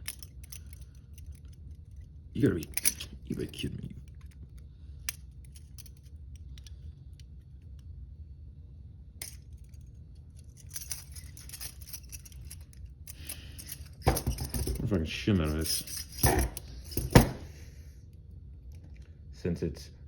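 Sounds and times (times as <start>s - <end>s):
lock pick clicking in handcuffs: 0.0s - 7.8s, 9.2s - 17.5s.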